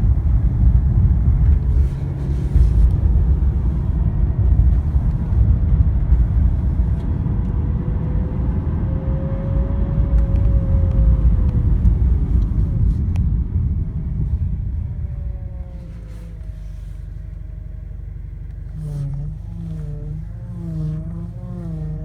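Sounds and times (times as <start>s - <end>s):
car engine rumbling: 0.0s - 22.0s
power steering pump whine: 0.0s - 22.0s.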